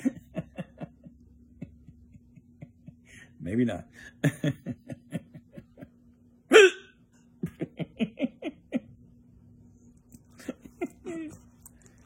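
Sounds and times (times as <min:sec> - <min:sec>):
person hiccuping: 0:06.5 - 0:07.0
person laughing: 0:06.5 - 0:09.0, 0:10.4 - 0:11.5.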